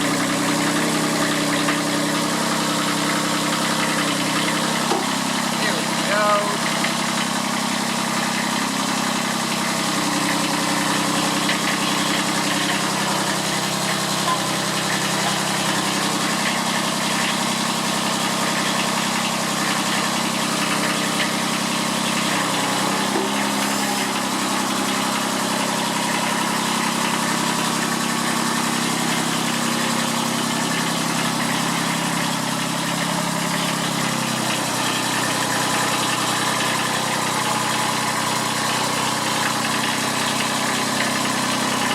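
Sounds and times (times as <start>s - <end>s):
tractor diesel engine idling: 0.0s - 41.9s.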